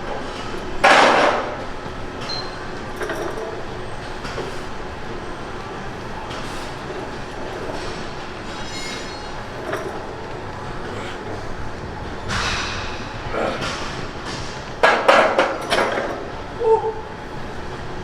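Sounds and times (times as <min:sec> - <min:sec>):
steady background rumble: 0:00.0 - 0:18.0
loud knocks or clanks: 0:12.2 - 0:15.9.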